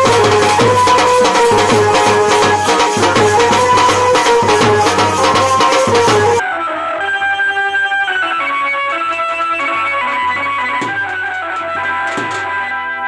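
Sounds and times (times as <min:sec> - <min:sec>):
music with fast beat: 0:00.0 - 0:06.4, 0:08.9 - 0:12.6
plucked string music: 0:08.3 - 0:12.8.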